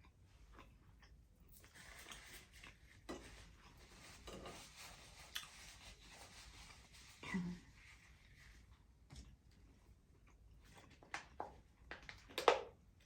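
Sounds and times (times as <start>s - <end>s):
person chewing: 0.0s - 3.8s.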